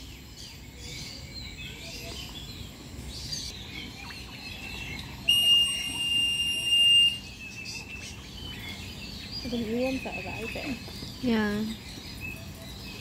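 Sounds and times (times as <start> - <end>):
songbirds chirping: 0.0 - 13.0
high-pitched whistle: 5.2 - 7.4.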